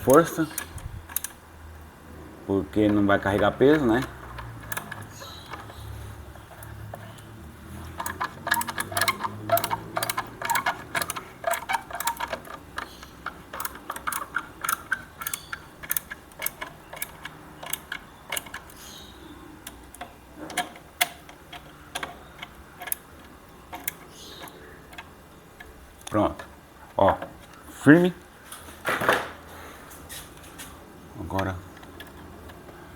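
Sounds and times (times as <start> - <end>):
screwdriver clicking: 0.0 - 1.4, 2.8 - 5.9, 6.6 - 19.0.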